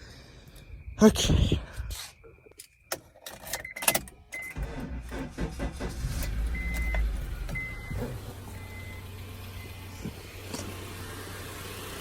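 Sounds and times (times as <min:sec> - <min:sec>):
car engine cranking and idling: 0:02.9 - 0:12.0.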